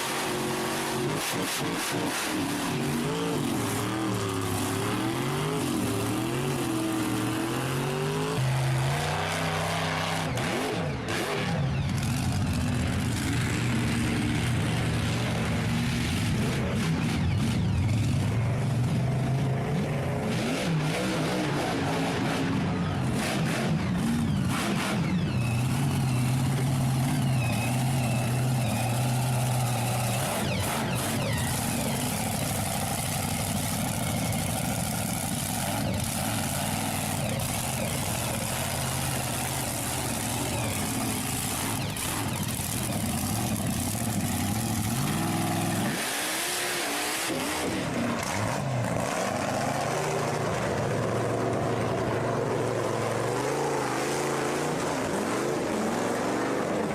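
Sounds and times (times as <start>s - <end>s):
engine running and revving: 0.0s - 56.9s.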